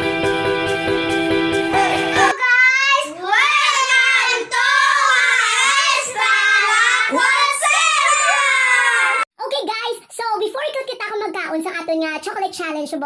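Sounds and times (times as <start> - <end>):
child singing: 1.8 - 8.4.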